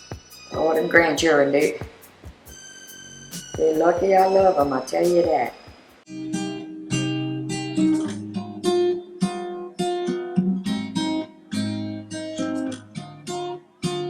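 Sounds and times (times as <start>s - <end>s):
acoustic guitar music: 0.0s - 14.0s.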